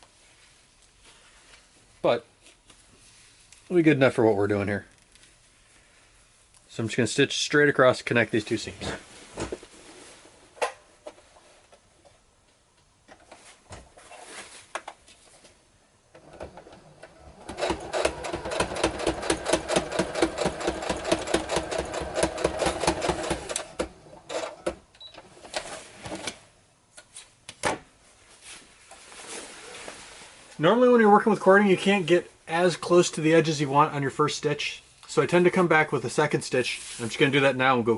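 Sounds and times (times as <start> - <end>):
sewing machine stitching: 16.2 - 24.8.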